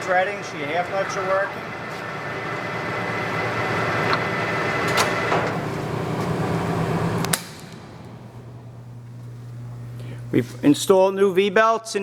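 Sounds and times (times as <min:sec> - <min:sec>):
lathe gear train whining: 0:00.0 - 0:10.4
sharp click: 0:07.2 - 0:07.8.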